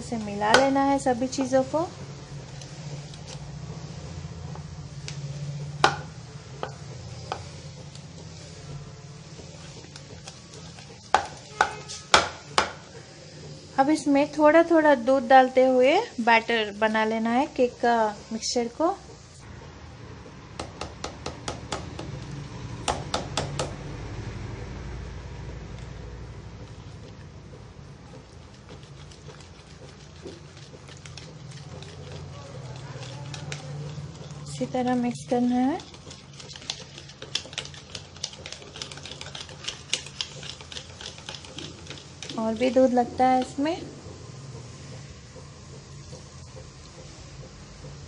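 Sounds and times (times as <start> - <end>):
utensil stirring crumbly mixture: 0.0 - 19.0, 25.1 - 43.8
utensil knocking against bowl: 5.8 - 7.4, 11.1 - 12.8.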